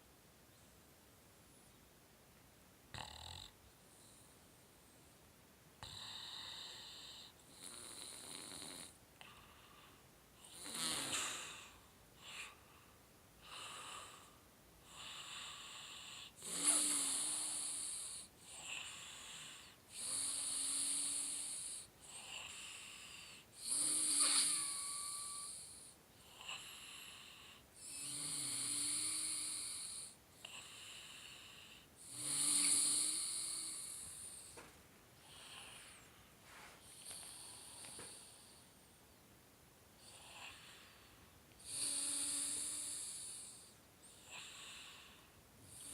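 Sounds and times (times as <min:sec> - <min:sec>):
person snoring: 0:10.4 - 0:12.6, 0:14.9 - 0:34.6, 0:40.0 - 0:45.9.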